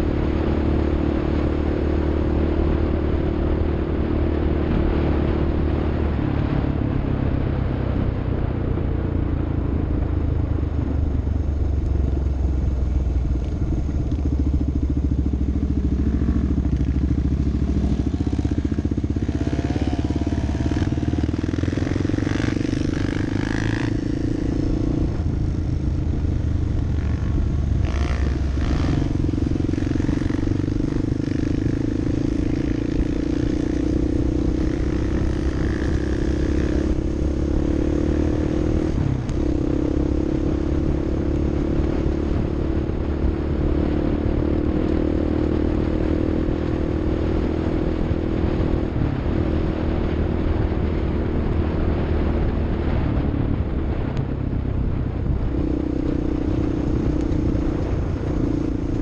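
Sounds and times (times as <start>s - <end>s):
off-road vehicle engine running: 0.0s - 59.0s.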